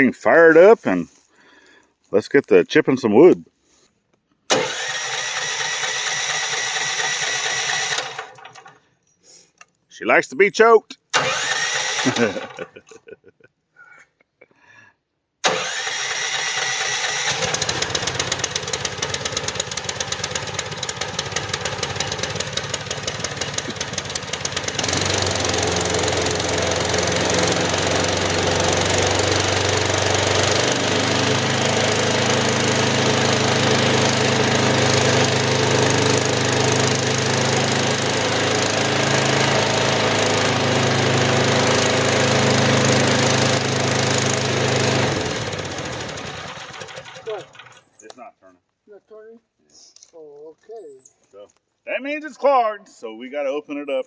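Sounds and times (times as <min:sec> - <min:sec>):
gasoline engine starting and chugging: 0:04.5 - 0:08.9, 0:11.1 - 0:12.7, 0:15.4 - 0:48.0.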